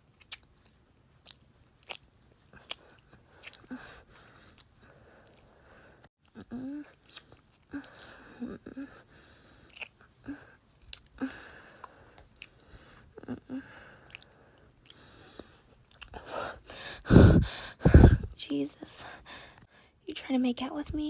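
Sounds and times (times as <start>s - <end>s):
wet kissing sounds: 7.0s - 8.1s, 9.7s - 10.0s.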